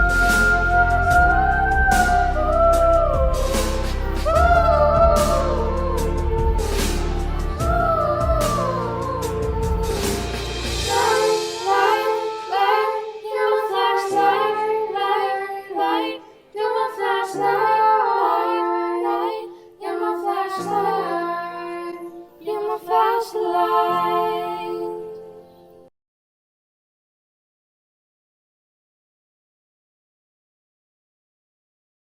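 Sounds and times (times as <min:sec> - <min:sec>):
held low accompanying notes: 0:00.0 - 0:14.8
wordless sung melody: 0:00.0 - 0:25.9.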